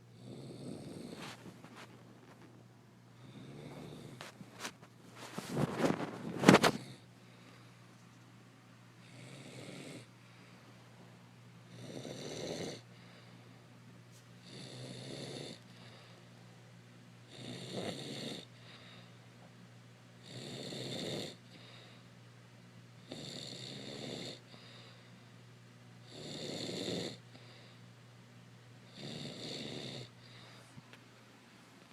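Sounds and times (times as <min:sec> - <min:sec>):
woman snoring: 0:00.1 - 0:01.3, 0:03.2 - 0:04.3, 0:09.0 - 0:10.1, 0:11.7 - 0:12.9, 0:14.4 - 0:16.0, 0:17.3 - 0:18.6, 0:20.2 - 0:21.6, 0:23.0 - 0:24.6, 0:26.0 - 0:27.3, 0:28.9 - 0:30.2.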